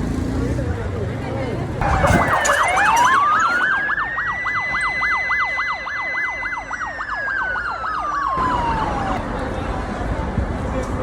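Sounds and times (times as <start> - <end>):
yelp siren: 1.8 - 9.2
wail siren: 1.8 - 9.6.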